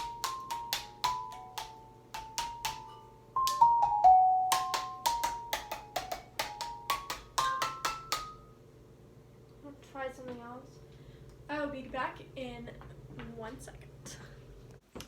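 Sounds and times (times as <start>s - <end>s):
xylophone notes: 0.1s - 5.5s.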